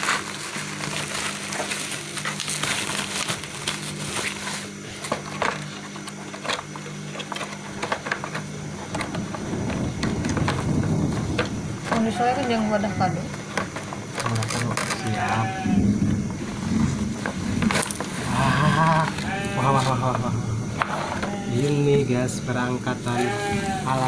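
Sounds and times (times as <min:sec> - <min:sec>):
packaging crinkling: 0:00.0 - 0:12.2, 0:13.4 - 0:15.6, 0:16.4 - 0:20.0
steady low hum: 0:00.0 - 0:24.0.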